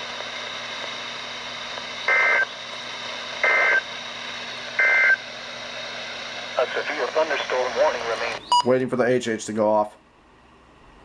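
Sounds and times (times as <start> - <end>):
faint radio hiss: 6.5 - 10.0.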